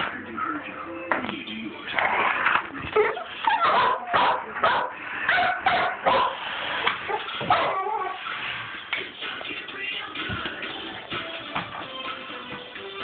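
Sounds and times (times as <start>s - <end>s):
dog whining and yipping: 7.1s - 8.2s.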